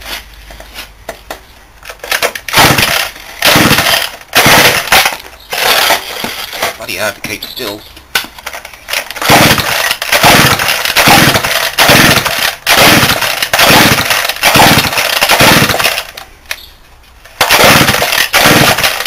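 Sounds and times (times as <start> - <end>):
chainsaw pull-start cranking: 2.0 - 6.7, 8.9 - 16.2, 17.4 - 19.0.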